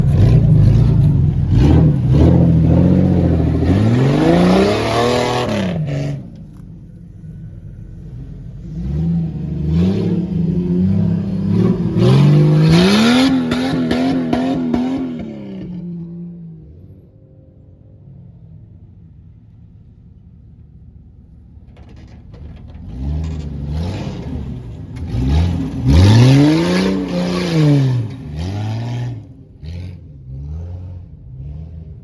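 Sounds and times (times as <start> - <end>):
vehicle engine revving: 0.0 - 16.8, 22.7 - 32.0.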